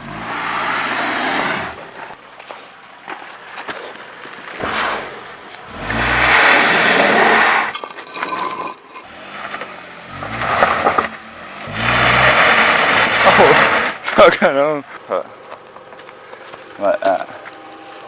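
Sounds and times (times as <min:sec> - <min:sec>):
car engine revving: 0:00.0 - 0:02.2, 0:04.6 - 0:07.8, 0:09.0 - 0:14.2
gravel crunching under tyres: 0:00.0 - 0:18.0.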